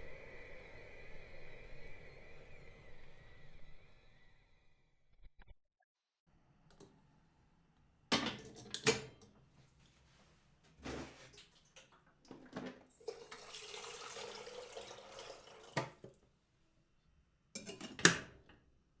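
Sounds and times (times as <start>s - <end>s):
water pouring into metal kettle: 11.3s - 16.2s
metal kettle clanking: 17.6s - 18.4s.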